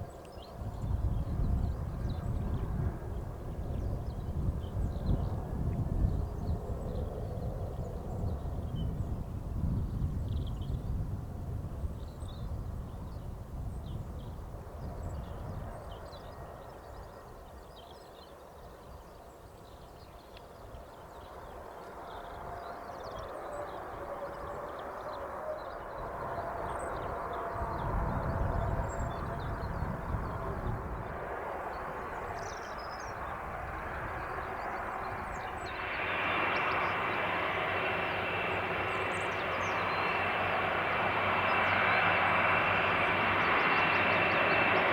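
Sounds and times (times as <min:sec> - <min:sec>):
faint birds chirping: 0:13.9 - 0:44.9
distant jet engines whining: 0:20.2 - 0:44.9.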